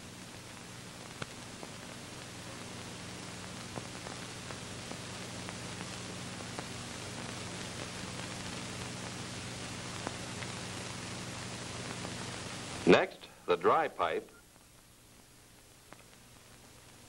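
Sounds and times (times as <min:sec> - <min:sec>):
steady hiss: 0:00.0 - 0:17.0
faint clicks: 0:15.8 - 0:17.0.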